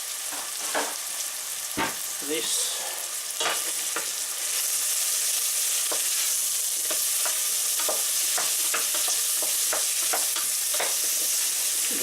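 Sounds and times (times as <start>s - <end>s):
food sizzling in oil: 0.0s - 12.0s
utensil scraping in pan: 2.7s - 12.0s.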